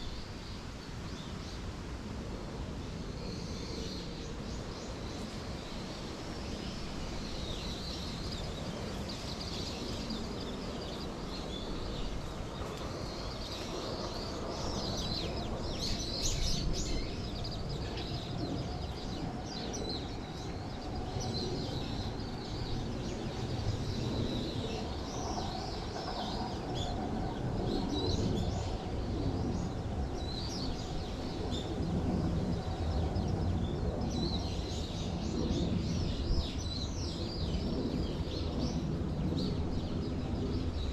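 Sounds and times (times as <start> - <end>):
songbirds chirping and twittering: 0.0 - 40.9.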